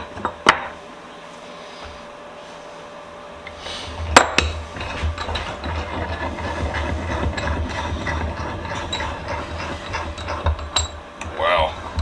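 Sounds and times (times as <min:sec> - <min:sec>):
vise screw clicking and scraping: 0:03.5 - 0:12.0
metal clanks: 0:04.0 - 0:12.0.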